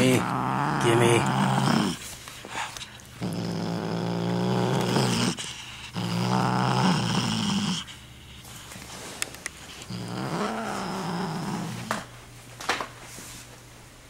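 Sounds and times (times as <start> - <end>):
cat growling: 0.0 - 2.1, 3.2 - 8.4, 9.8 - 12.1.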